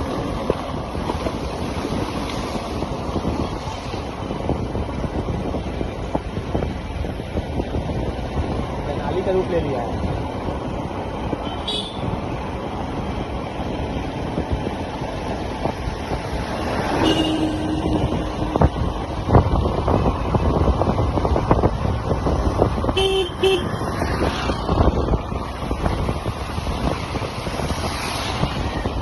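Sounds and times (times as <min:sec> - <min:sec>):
motorcycle riding rush: 0:00.0 - 0:29.0
vehicle horn: 0:11.4 - 0:12.1, 0:17.0 - 0:18.7, 0:23.0 - 0:23.8.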